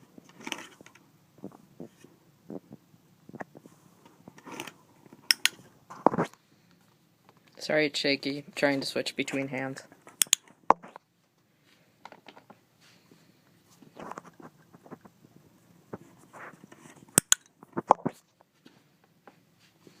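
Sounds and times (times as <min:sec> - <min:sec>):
dog training clicker: 0:10.2 - 0:10.4.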